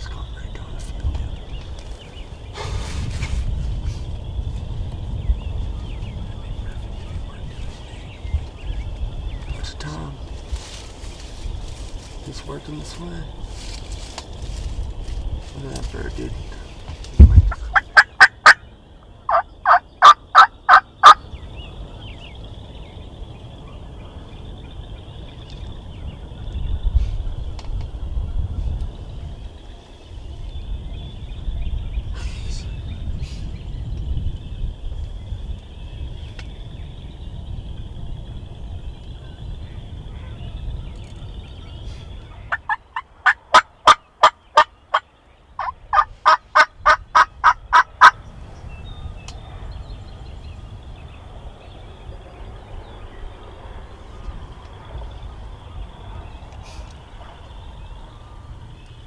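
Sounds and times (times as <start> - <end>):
steady low rumble: 0.0 - 20.0, 21.2 - 59.0
turkey yelping: 17.3 - 18.6, 19.3 - 21.2, 42.5 - 45.0, 45.6 - 48.2.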